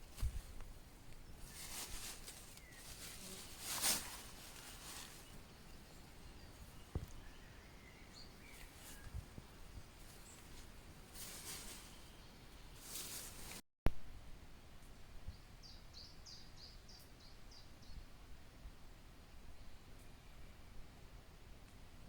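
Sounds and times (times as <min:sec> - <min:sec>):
soft hiss: 0:00.0 - 0:22.0
faint bird chirps: 0:01.2 - 0:13.5.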